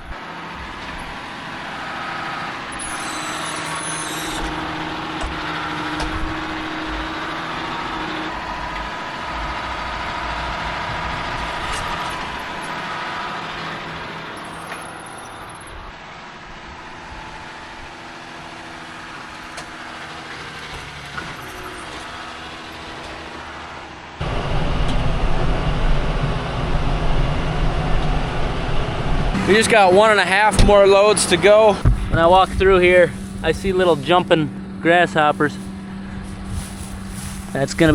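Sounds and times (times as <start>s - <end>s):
heavy low rumble: 0.0s - 14.4s, 24.2s - 37.9s
tractor engine running: 0.0s - 37.9s.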